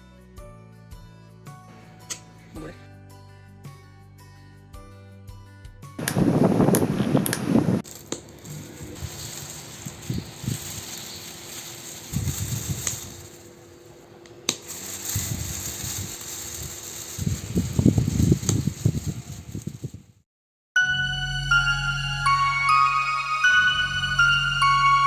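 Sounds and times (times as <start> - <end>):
fan motor humming: 6.0 - 20.0.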